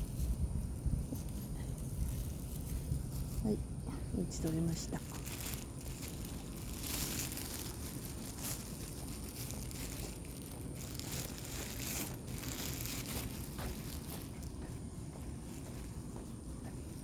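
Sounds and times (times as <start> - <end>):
low rumble: 0.0 - 14.5
plastic bag crinkling: 4.3 - 14.6.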